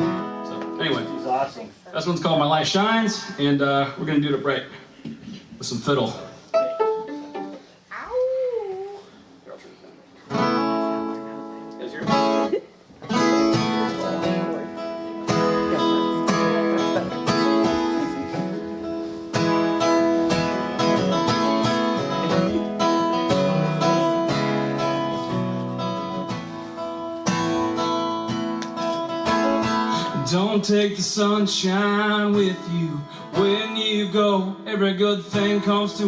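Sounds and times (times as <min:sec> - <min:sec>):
acoustic guitar strumming: 0:00.0 - 0:01.6, 0:06.4 - 0:07.7, 0:10.3 - 0:36.0
fiddle playing: 0:06.5 - 0:07.8.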